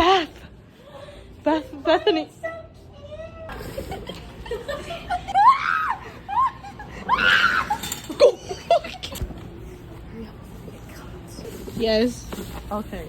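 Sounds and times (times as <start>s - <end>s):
people laughing and squealing: 3.4s - 9.4s.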